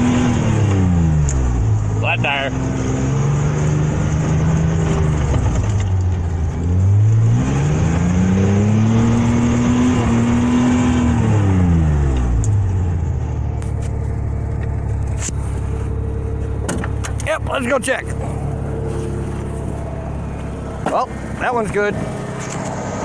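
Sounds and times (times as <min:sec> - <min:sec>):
truck engine revving: 0:00.0 - 0:23.0.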